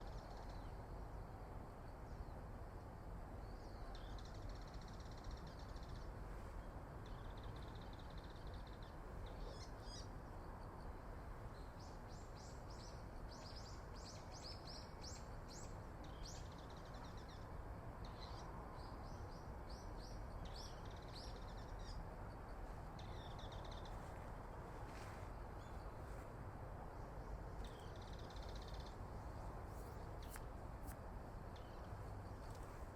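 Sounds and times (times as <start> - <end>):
small birds chirping: 27.0 - 32.9.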